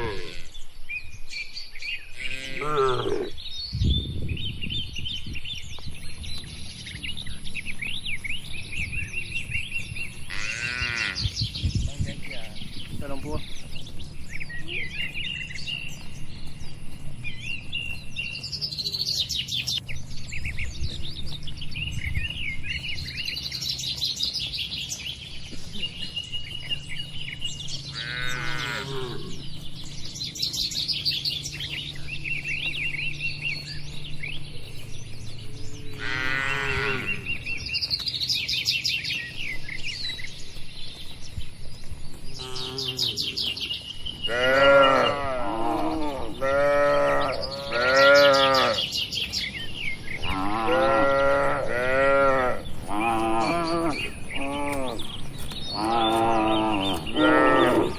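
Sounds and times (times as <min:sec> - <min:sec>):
cattle mooing: 0:00.0 - 0:00.6, 0:02.2 - 0:03.4, 0:10.3 - 0:11.2, 0:27.9 - 0:29.4, 0:35.9 - 0:37.3, 0:42.4 - 0:43.3, 0:44.2 - 0:48.9, 0:50.2 - 0:55.1, 0:55.8 - 0:57.9
birds chirping and twittering: 0:00.0 - 0:57.9.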